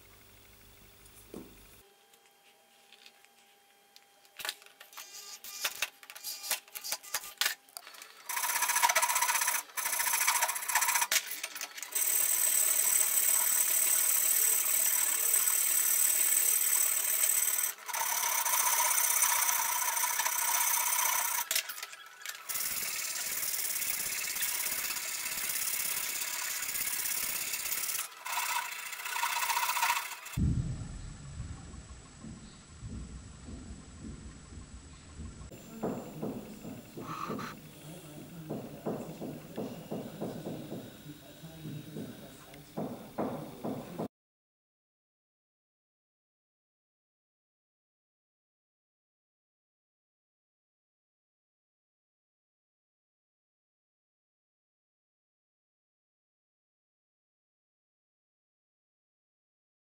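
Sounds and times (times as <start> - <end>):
small power tool running: 4.9 - 30.4, 35.5 - 44.1.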